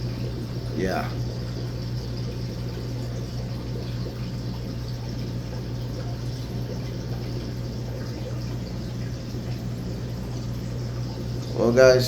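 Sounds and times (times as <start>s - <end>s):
filter water trickling and bubbling: 0.0s - 12.0s
low electrical hum: 0.0s - 12.0s.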